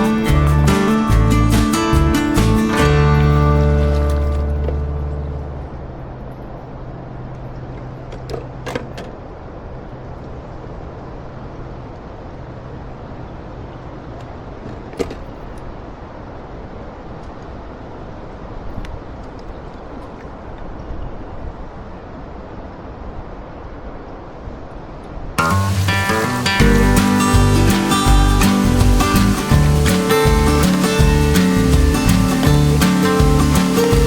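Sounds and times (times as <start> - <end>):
acoustic guitar music: 0.0 - 6.2, 25.4 - 34.0
outdoor rushing noise: 25.3 - 34.0.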